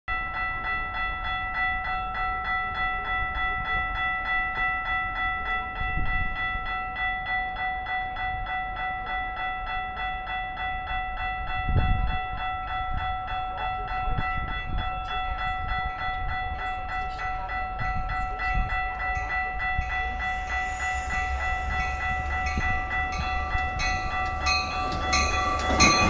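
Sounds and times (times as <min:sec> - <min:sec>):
railroad crossing bell ringing: 0:00.1 - 0:26.0
low rumbles: 0:14.2 - 0:26.0.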